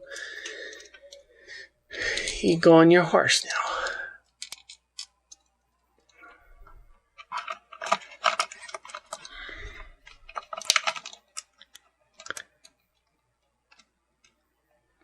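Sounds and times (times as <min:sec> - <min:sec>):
plastic toy parts clicking: 0:00.1 - 0:01.3, 0:03.8 - 0:06.2, 0:07.2 - 0:14.4
plastic scraping: 0:06.1 - 0:12.6.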